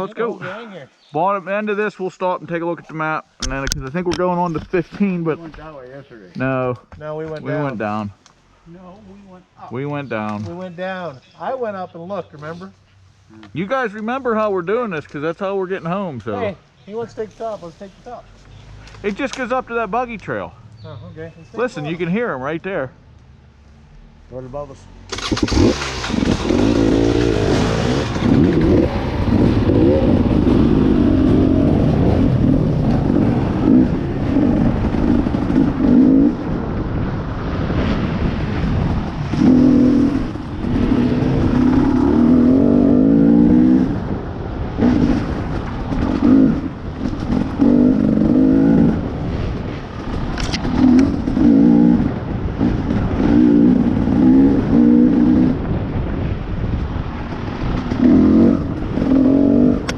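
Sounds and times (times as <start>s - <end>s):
dirt bike engine revving: 25.1s - 56.2s, 57.4s - 59.9s.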